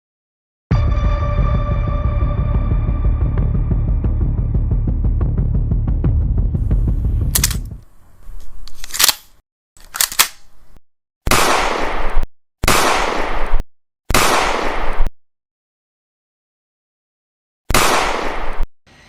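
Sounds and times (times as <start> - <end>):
low music: 0.7 - 7.8
sharp clicks: 7.3 - 7.9, 8.7 - 10.5
gunshots with reverberant tail: 11.3 - 15.1, 17.7 - 18.6.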